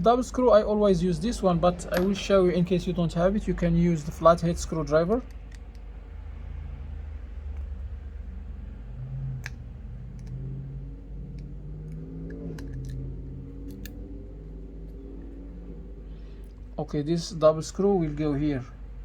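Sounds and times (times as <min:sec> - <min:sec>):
low hum: 0:00.0 - 0:19.0
drone shifting in pitch: 0:08.1 - 0:16.9.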